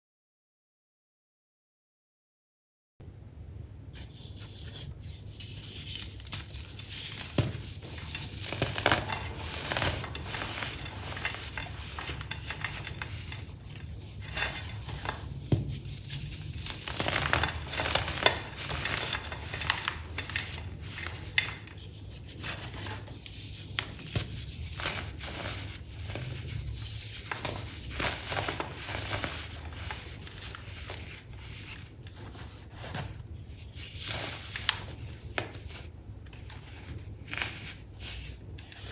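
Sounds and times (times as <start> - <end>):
baking soda crunching: 4.9 - 38.9.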